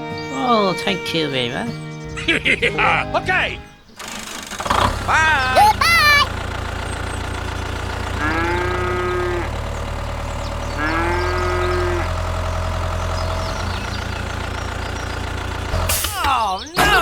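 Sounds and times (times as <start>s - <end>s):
low engine hum: 6.3s - 15.8s
cow mooing: 8.2s - 9.4s.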